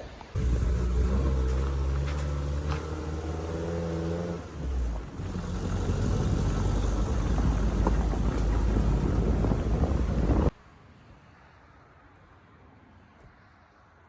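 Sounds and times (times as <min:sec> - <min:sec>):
truck engine hum: 0:00.3 - 0:10.5.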